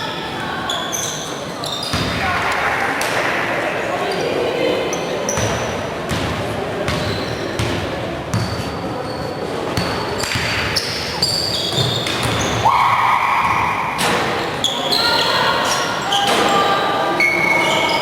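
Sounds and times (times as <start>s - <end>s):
sneakers squeaking on floor: 0.5s - 2.3s, 5.0s - 6.3s, 6.9s - 12.7s, 13.4s - 18.0s
basketball bouncing on court: 5.3s - 8.7s, 9.7s - 12.6s.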